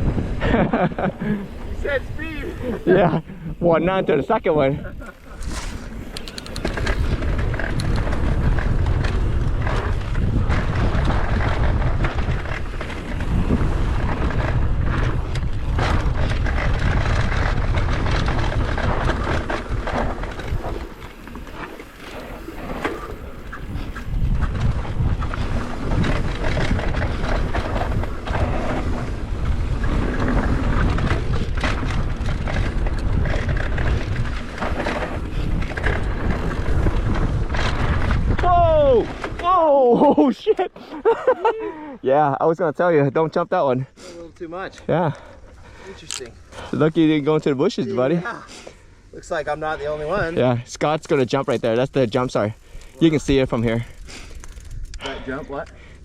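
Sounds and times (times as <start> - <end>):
wind rushing over microphone: 0.0 - 39.6
bike rattling over bumps: 0.0 - 40.4, 49.2 - 56.0
bike tyres on dirt: 0.0 - 41.6, 43.9 - 56.0.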